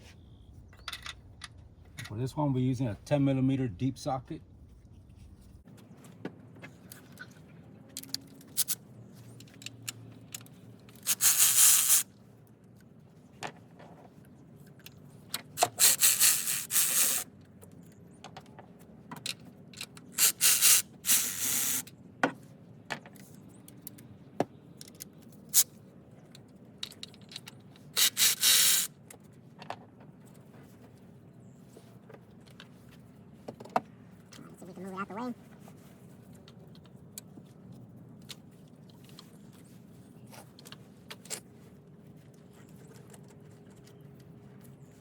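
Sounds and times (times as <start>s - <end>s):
ratchet rattling: 20.2s - 21.8s, 28.0s - 28.9s.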